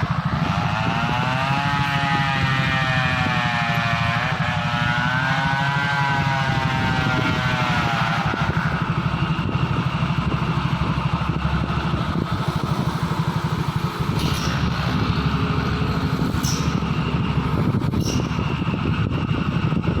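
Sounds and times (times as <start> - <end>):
diesel truck engine running: 0.0 - 20.0
high squeaks: 12.8 - 18.7.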